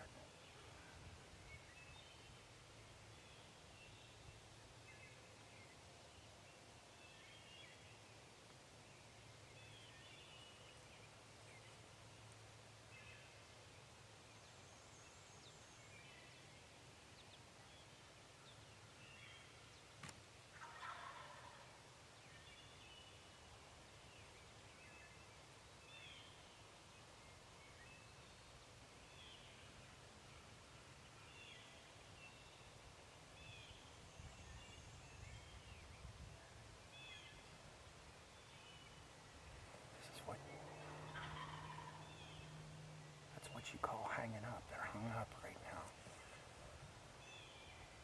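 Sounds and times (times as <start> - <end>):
songbird chirps: 0.0 - 48.0
turkey gobbling: 20.5 - 21.7, 40.8 - 42.6.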